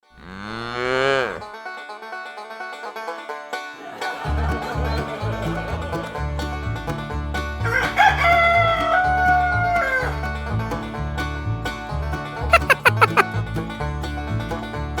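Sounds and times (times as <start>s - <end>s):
upbeat plucked-string music: 1.6s - 15.0s
steady bass beat: 12.5s - 13.6s.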